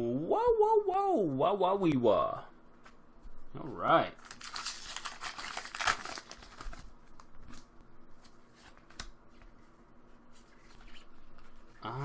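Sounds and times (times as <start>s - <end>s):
foil wrapper crinkling and tearing: 4.2s - 7.3s
trading cards rustling and clicking: 4.2s - 9.6s.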